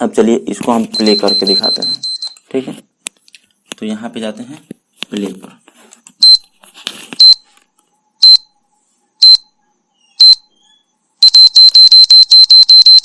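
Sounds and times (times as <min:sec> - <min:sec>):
short high electronic beeps: 0:00.9 - 0:02.4, 0:09.2 - 0:09.6, 0:10.2 - 0:13.0.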